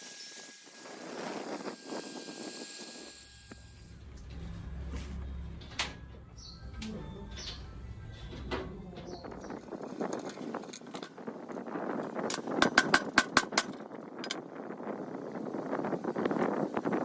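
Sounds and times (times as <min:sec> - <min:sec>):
scraping on metal parts: 0:03.6 - 0:11.4
sharp metal taps: 0:12.6 - 0:13.8.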